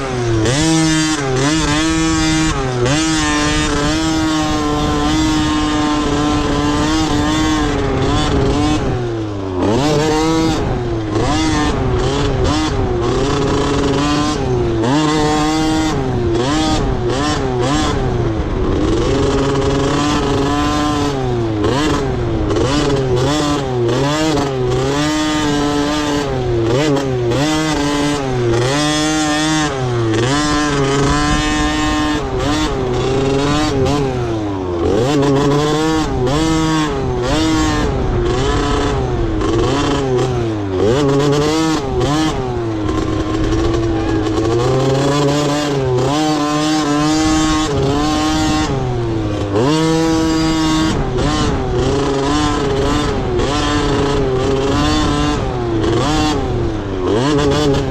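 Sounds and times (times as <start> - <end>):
dirt bike engines revving: 0.0 - 57.9.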